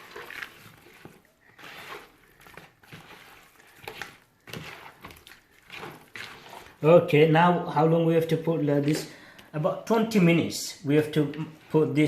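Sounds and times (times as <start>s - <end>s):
meat squelching in marinade: 0.0s - 7.4s.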